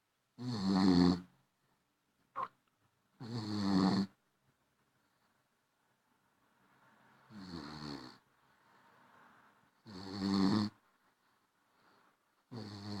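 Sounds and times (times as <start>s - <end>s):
puppy snoring: 0.4s - 1.3s, 3.2s - 4.2s, 7.3s - 8.2s, 9.8s - 10.8s, 12.5s - 13.0s
soft breath: 11.0s - 12.5s.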